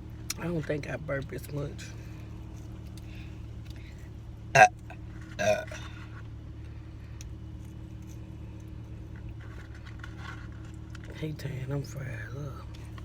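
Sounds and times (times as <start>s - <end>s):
steady low hum: 0.0s - 13.0s
person burping: 4.6s - 5.8s.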